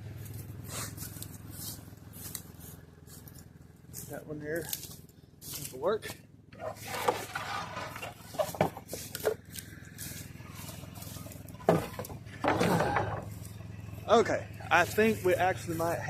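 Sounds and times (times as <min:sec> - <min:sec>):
steady low hum: 0:00.0 - 0:16.0
wooden boards knocking and scraping: 0:06.6 - 0:09.4, 0:11.6 - 0:13.4.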